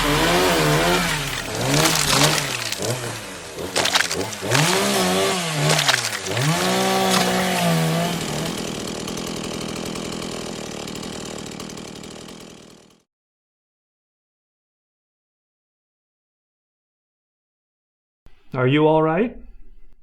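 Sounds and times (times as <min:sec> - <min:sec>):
chainsaw engine revving: 0:00.0 - 0:13.1.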